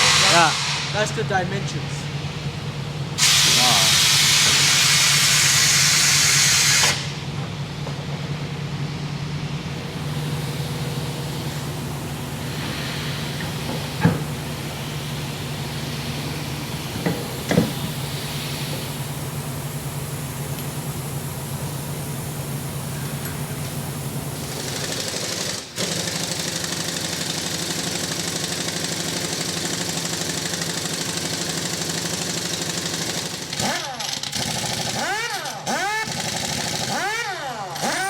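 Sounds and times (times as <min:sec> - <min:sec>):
loud air hiss: 0:00.0 - 0:02.2, 0:03.1 - 0:07.3, 0:09.8 - 0:29.6
low machine hum: 0:07.1 - 0:24.7.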